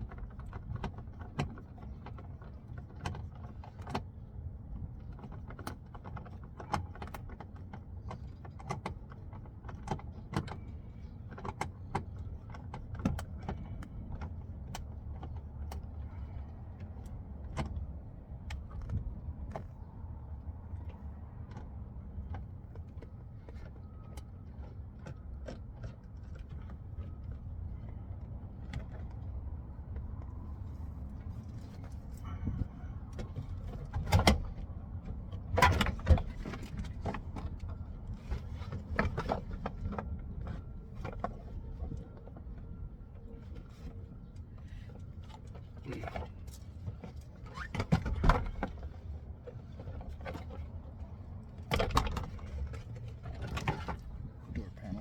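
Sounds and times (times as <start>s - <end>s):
clicks and rattles of trim panel: 33.2s - 42.0s, 45.3s - 49.0s, 51.6s - 54.3s.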